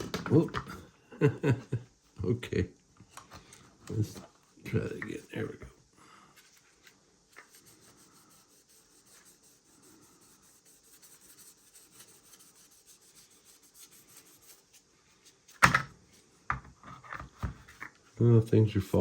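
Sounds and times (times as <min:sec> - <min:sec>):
sanding sponge rubbing: 0:07.3 - 0:15.6.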